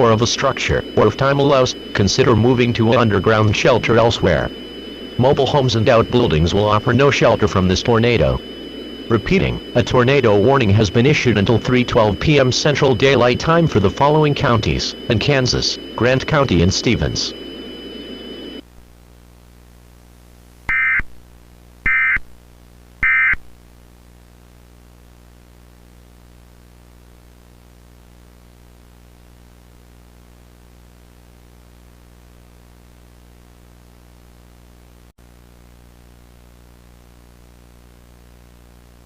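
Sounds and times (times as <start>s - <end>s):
digital data tone bursts: 0.0s - 18.6s, 21.9s - 22.2s, 23.0s - 23.4s
faint steady hum: 0.0s - 39.0s.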